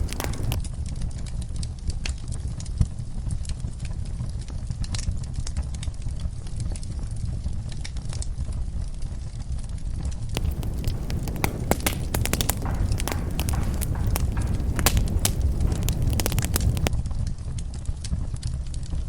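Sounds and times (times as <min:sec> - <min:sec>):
fire crackling and popping: 0:00.0 - 0:00.6, 0:10.4 - 0:16.9
fire rumbling in fireplace: 0:00.0 - 0:00.6, 0:10.4 - 0:16.9.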